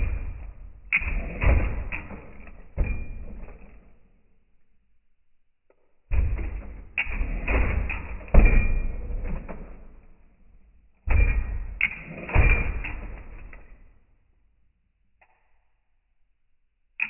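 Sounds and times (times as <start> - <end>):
bumper striking ground: 6.1 - 9.2.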